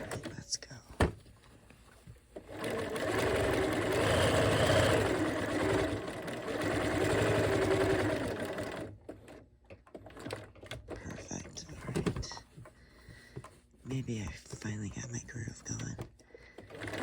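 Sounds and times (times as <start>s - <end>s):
sewing machine stitching: 2.4s - 12.4s, 15.8s - 17.0s.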